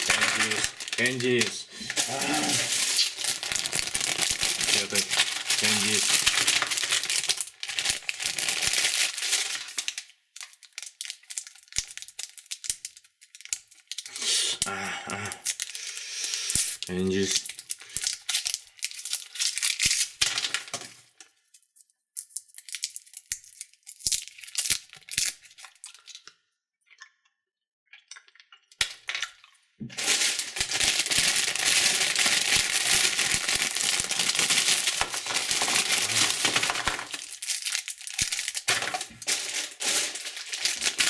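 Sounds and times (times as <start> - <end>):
plastic wrappers crinkling: 0.0 - 26.2, 29.9 - 41.0.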